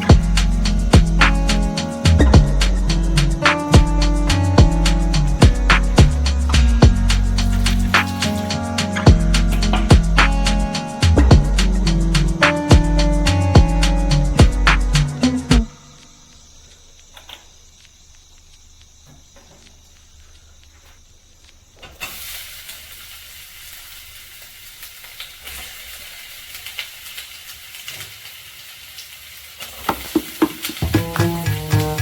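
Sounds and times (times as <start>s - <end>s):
food sizzling in a frying pan: 4.3s - 13.2s, 21.7s - 32.0s
faint clicks: 14.5s - 22.0s.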